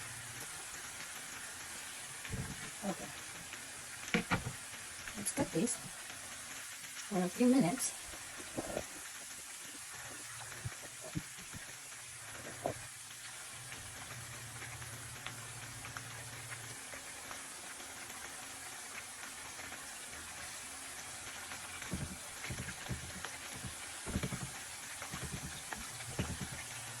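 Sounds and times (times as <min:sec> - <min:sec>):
potato slices sizzling in oil: 0:00.0 - 0:27.0
small oil pops: 0:04.0 - 0:04.6, 0:21.8 - 0:26.8.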